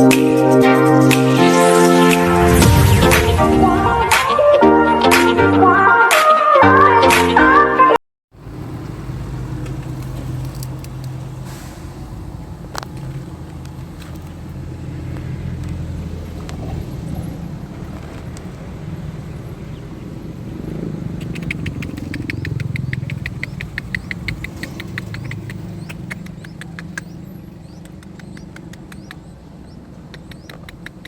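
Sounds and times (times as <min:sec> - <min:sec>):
nestling birds cheeping: 0:20.8 - 0:31.0.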